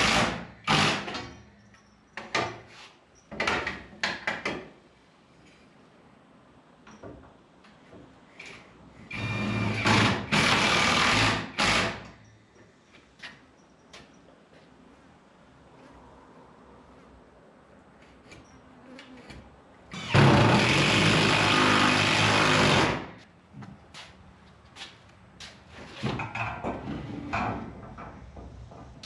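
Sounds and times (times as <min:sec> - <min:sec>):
power drill running: 0:09.1 - 0:12.0, 0:19.9 - 0:23.1.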